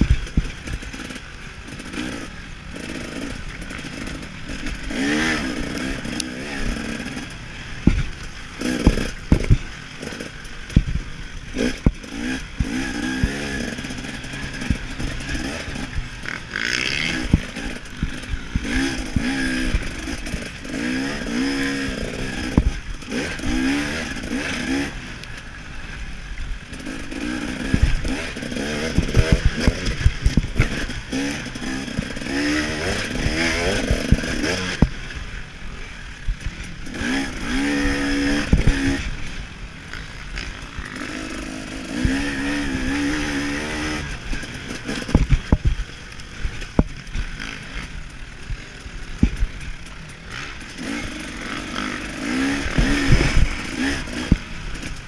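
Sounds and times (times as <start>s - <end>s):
motorcycle engine revving hard: 0.0s - 55.0s
sharp thumps: 7.8s - 20.6s.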